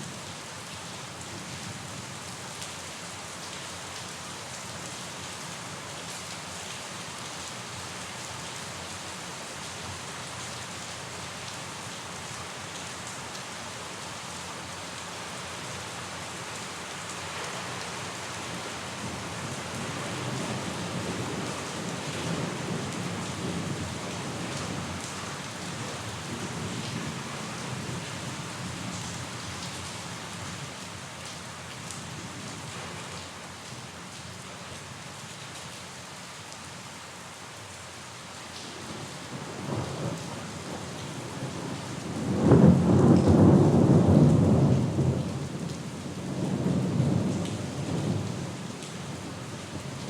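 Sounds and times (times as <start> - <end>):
steady rain falling: 0.0 - 50.0
low rumble of thunder: 38.8 - 50.0.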